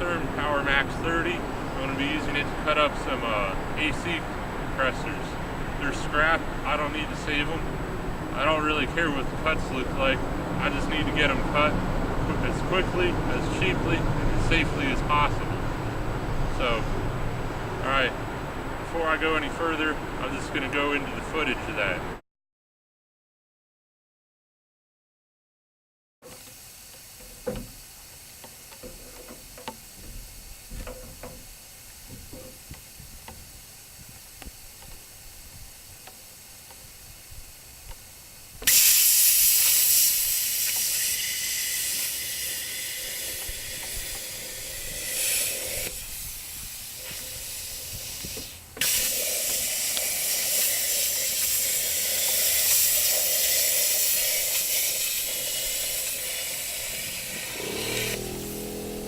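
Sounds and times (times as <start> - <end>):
plasma cutter hissing: 26.3 - 59.0.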